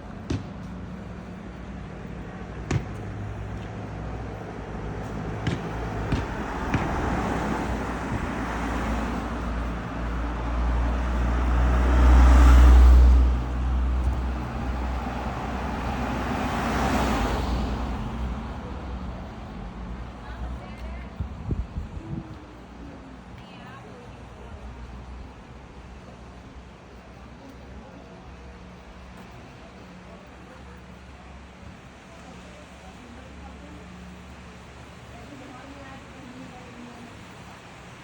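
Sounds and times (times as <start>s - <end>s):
motor vehicles passing: 0.0s - 38.0s.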